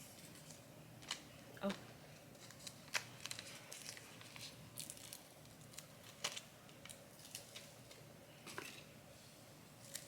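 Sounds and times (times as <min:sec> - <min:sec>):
plastic film crinkling: 0:00.1 - 0:08.0.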